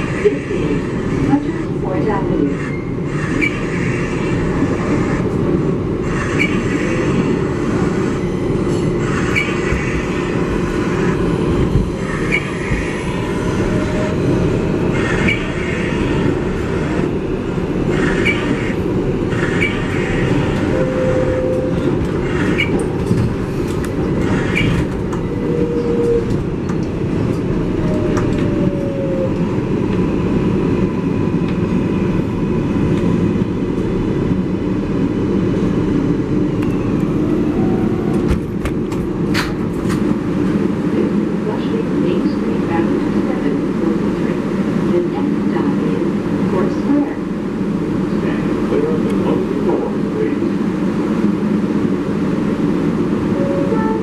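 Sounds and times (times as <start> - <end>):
subway car rumble: 0.0 - 54.0
train whining tones: 17.8 - 29.8, 53.3 - 54.0.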